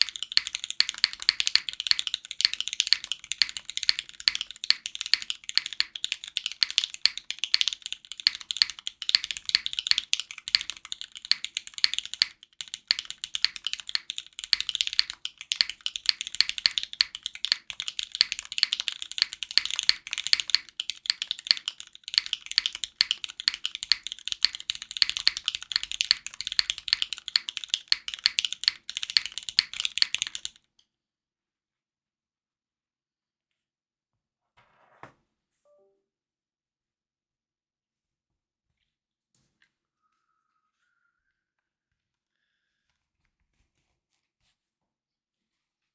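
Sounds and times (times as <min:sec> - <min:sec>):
mechanical keyboard typing: 0:00.0 - 0:30.6.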